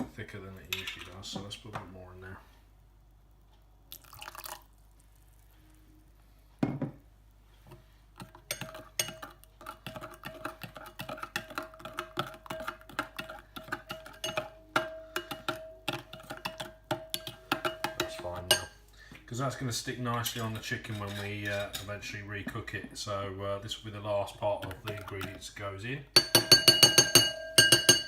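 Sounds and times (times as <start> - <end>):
liquid pouring into a bowl: 3.9 - 5.4
spoon clinking against a bowl: 8.2 - 18.8, 20.2 - 22.6, 26.2 - 28.0.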